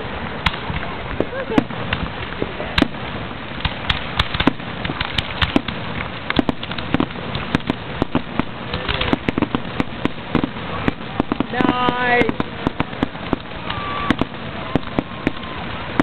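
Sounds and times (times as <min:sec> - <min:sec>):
fireworks bursting with bangs: 0:00.0 - 0:16.0
fireworks crackling: 0:00.0 - 0:16.0.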